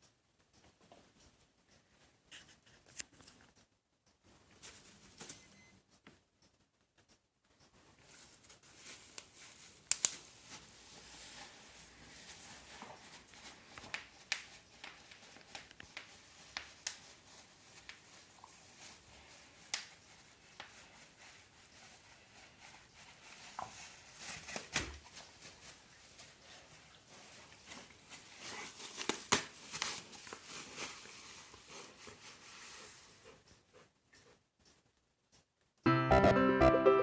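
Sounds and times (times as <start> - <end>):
bubble wrap popping: 8.8 - 10.7, 12.6 - 18.1, 28.1 - 31.7.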